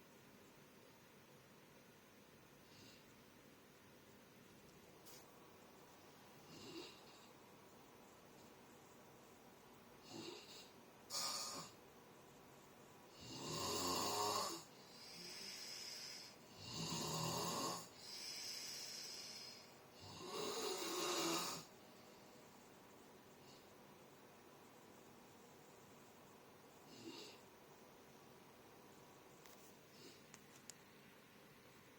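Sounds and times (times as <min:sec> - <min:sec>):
person snoring: 0:10.0 - 0:11.8, 0:13.1 - 0:21.7.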